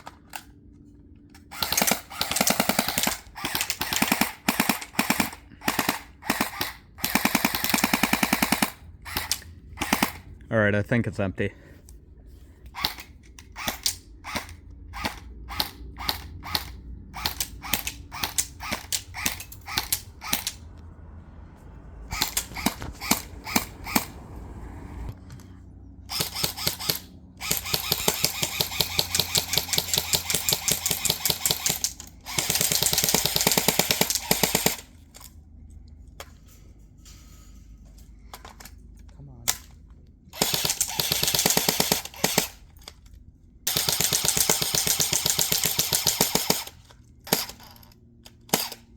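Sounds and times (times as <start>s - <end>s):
airsoft rifle firing: 1.4s - 10.2s, 12.8s - 20.6s, 22.1s - 24.2s, 26.1s - 34.9s, 40.4s - 42.6s, 43.7s - 47.6s.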